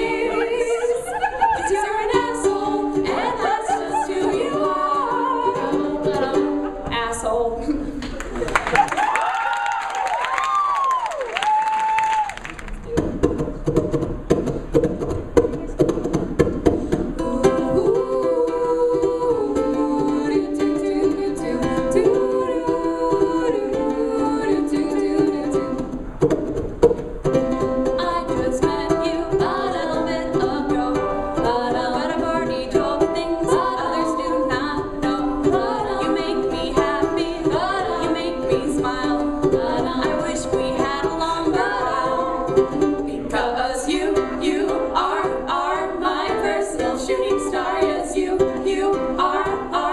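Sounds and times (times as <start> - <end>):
person singing: 0.0 - 6.9, 17.2 - 25.9, 28.0 - 49.9
strummed plucked strings: 12.9 - 49.9.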